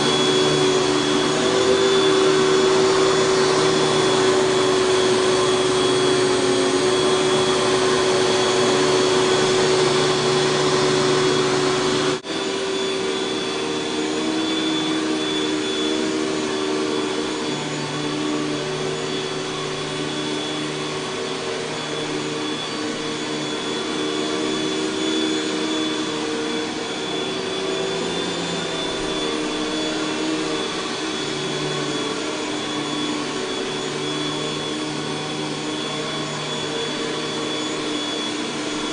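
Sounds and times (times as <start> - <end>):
upright vacuum cleaner running: 0.0 - 38.9.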